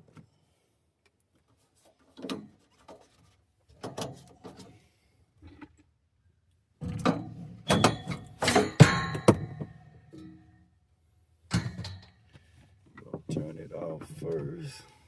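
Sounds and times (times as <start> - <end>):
metal parts clanking: 7.7 - 9.7.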